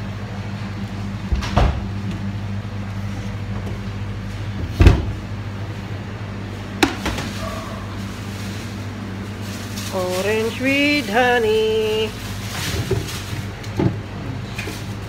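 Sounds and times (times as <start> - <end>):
low machinery hum: 0.0 - 15.0
kitchen knocks and clunks: 1.3 - 1.8, 4.8 - 5.2, 13.8 - 14.0.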